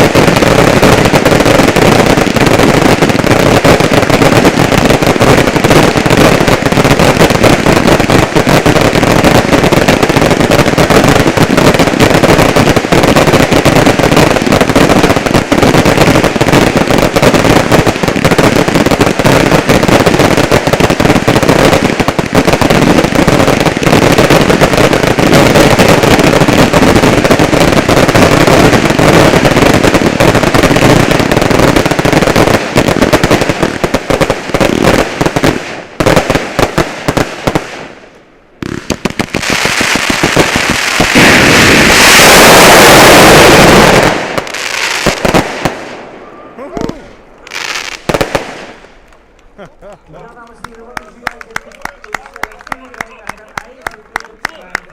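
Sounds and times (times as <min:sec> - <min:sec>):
rapid fireworks bangs: 0:00.0 - 0:54.9.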